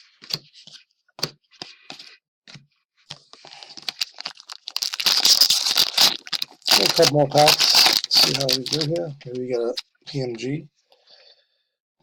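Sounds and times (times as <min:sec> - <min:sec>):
foil wrapper crinkling and tearing: 0:03.5 - 0:09.1.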